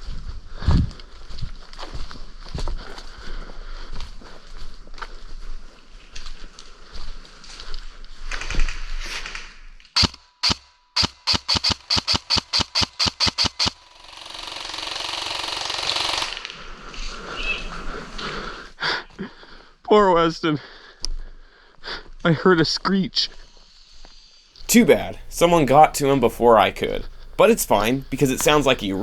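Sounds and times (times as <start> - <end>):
airsoft gun shots: 10.0 - 13.8.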